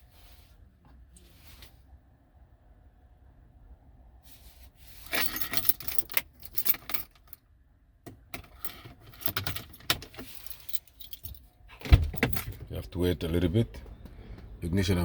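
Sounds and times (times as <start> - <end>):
keys jangling: 5.1 - 7.4, 8.4 - 12.7.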